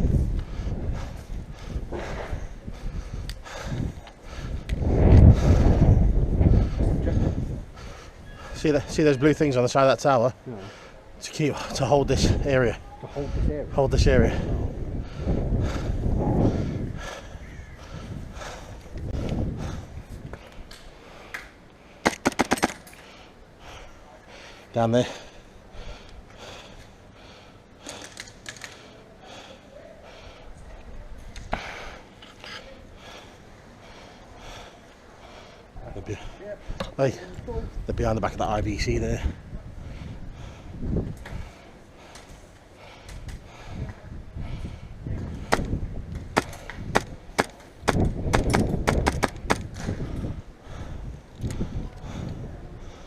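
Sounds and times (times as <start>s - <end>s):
airsoft gun shots: 22.0s - 22.9s, 46.4s - 49.6s
sharp clicks and knocks: 22.1s - 23.0s, 46.4s - 49.9s.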